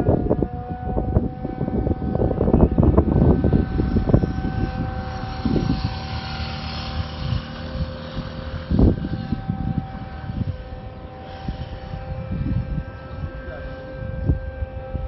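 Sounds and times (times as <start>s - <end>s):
jet engine whine: 0.0s - 15.0s
wind rumble on microphone: 0.0s - 15.0s.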